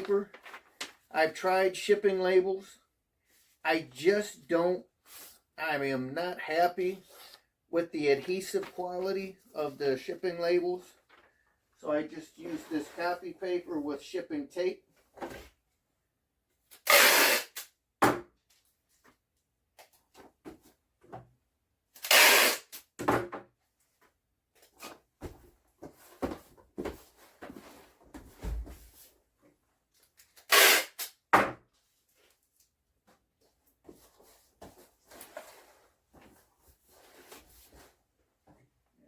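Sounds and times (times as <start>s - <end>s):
tape ripping off roll: 16.8s - 17.7s, 22.0s - 22.9s, 30.3s - 31.2s.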